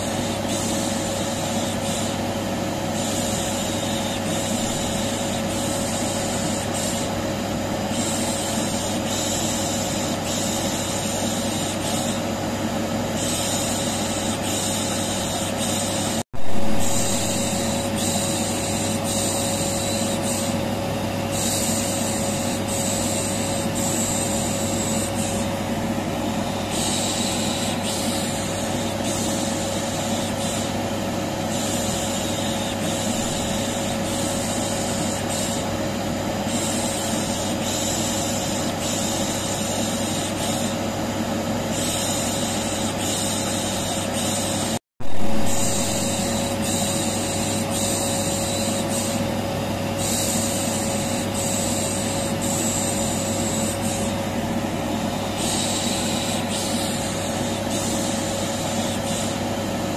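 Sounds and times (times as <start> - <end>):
vacuum cleaner running: 0.0 - 59.9
rhythmic shushing hiss: 13.1 - 20.5.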